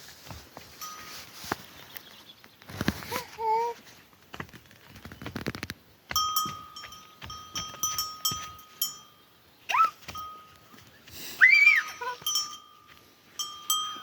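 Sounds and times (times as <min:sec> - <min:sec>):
high ringing tone: 0:11.6 - 0:14.0.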